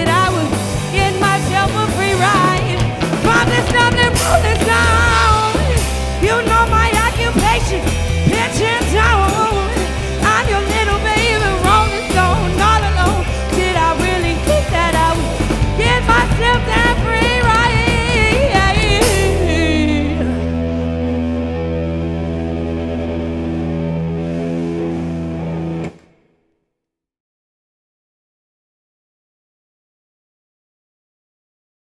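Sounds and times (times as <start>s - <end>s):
rock band playing: 0.0s - 26.2s
final band hit: 0.7s - 13.6s
guitar chord ringing: 2.2s - 6.2s, 19.3s - 26.0s.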